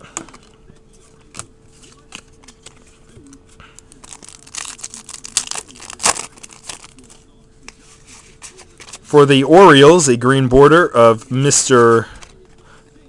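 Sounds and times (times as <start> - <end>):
cards being handled: 0.2 - 9.2
card pack wrapper crinkling: 3.9 - 7.2.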